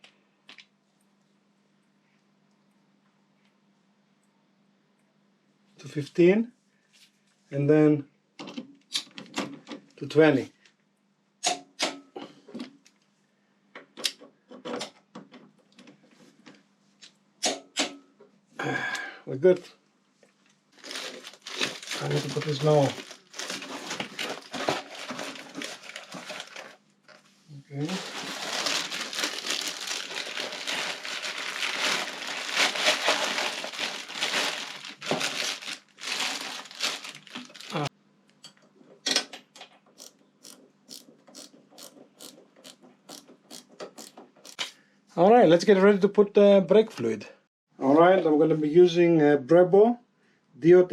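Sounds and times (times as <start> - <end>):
packaging crinkling and rustling: 20.7 - 37.9.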